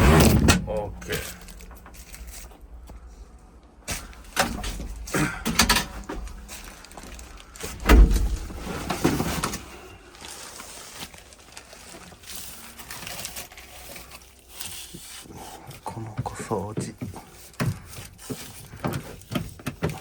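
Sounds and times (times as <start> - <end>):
hands clicking and scraping panels: 3.8 - 9.7, 15.6 - 20.0
heavy thump: 7.6 - 9.4.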